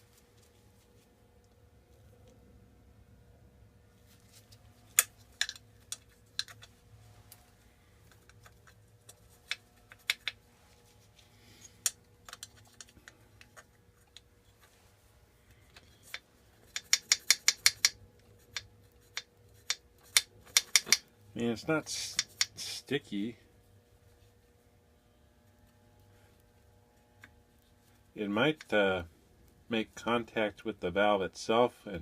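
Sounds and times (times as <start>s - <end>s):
sharp metallic clicks and taps: 8.1s - 10.4s, 16.1s - 21.1s, 22.0s - 22.6s.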